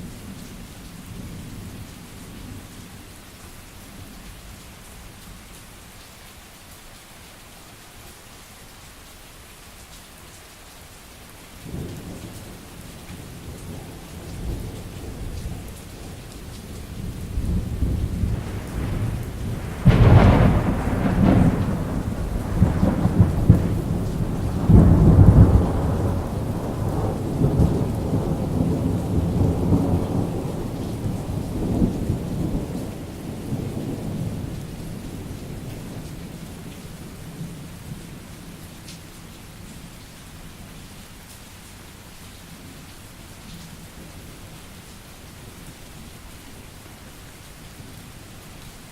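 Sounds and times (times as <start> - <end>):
steady rain: 0.0 - 48.9
thunder rolling: 17.0 - 32.7
loud thunder cracks: 17.5 - 30.5.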